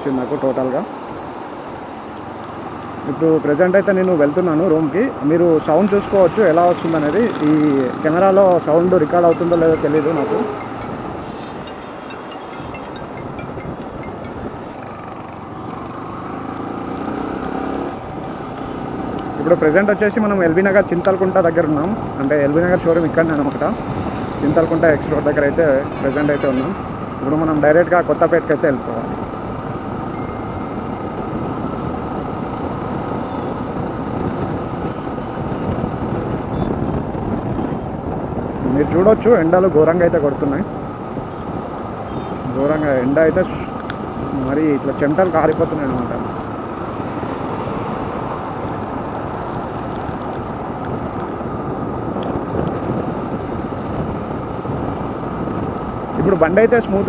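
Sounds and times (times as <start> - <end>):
surrounding traffic: 0.0 - 57.0
motorcycle engine: 4.4 - 13.0, 14.3 - 27.8
wind rushing over microphone: 13.4 - 57.0.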